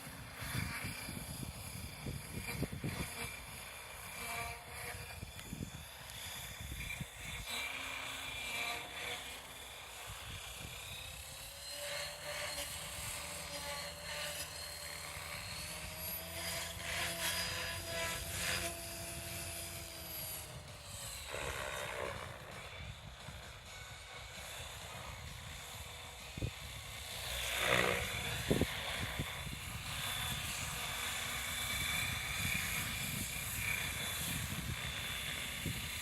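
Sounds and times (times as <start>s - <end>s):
wind buffeting microphone: 0.0s - 3.6s, 4.7s - 7.5s, 24.9s - 27.0s, 27.7s - 36.0s
model helicopter rotor whine: 0.0s - 36.0s.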